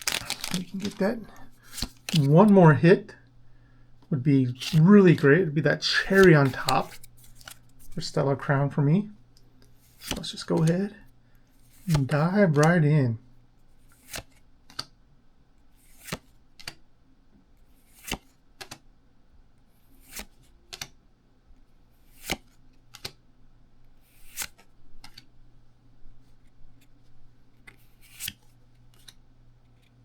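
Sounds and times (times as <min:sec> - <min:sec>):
trading cards snapping: 0:00.0 - 0:02.5
cards sliding swishes: 0:00.0 - 0:02.6, 0:04.5 - 0:05.2, 0:06.0 - 0:08.2, 0:09.7 - 0:10.7, 0:11.6 - 0:12.7, 0:13.8 - 0:14.8, 0:15.8 - 0:16.8, 0:17.7 - 0:18.8, 0:19.9 - 0:20.9, 0:21.9 - 0:23.2, 0:24.0 - 0:25.3, 0:27.6 - 0:29.9.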